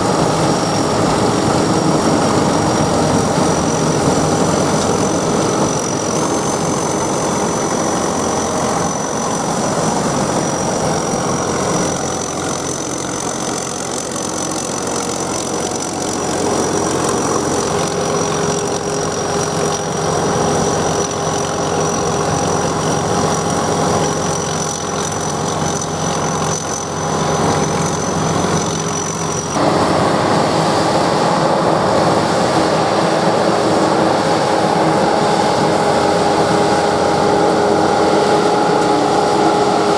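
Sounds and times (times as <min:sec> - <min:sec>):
harvester engine droning: 0:00.0 - 0:39.9
high machine whine: 0:00.0 - 0:39.9.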